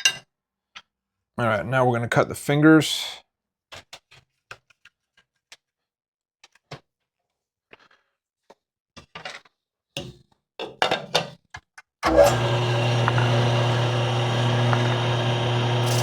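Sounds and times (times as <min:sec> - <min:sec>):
mill press motor humming: 0:12.0 - 0:16.0
clicks and knocks of tools: 0:12.1 - 0:13.8.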